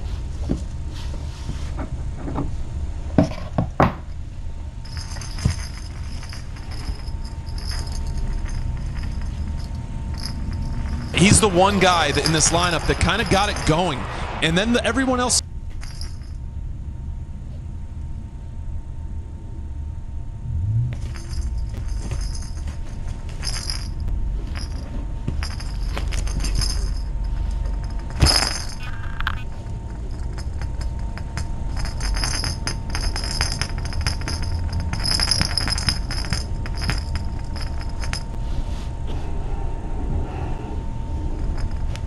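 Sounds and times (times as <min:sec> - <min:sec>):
small jingle bell rattling: 0:04.8 - 0:13.8, 0:21.0 - 0:38.4.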